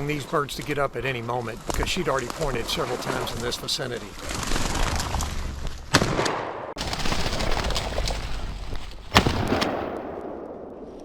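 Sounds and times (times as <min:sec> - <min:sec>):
shotgun shots: 0:05.9 - 0:07.5, 0:09.1 - 0:10.9.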